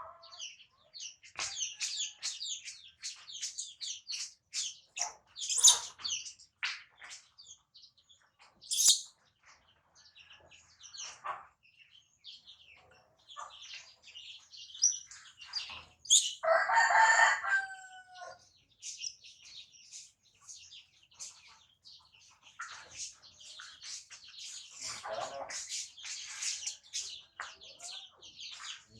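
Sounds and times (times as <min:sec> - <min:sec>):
birds chirping: 0:00.3 - 0:28.9
rooster crowing: 0:16.4 - 0:18.4.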